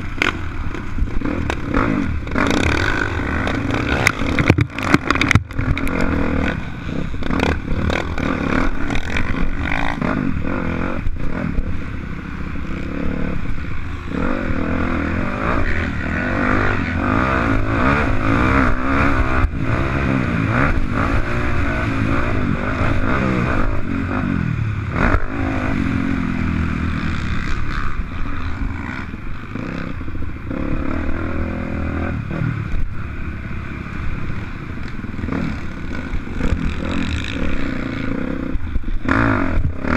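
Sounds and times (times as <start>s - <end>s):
dirt bike engine revving: 0.0s - 39.9s
knocks and rattles: 3.8s - 6.0s.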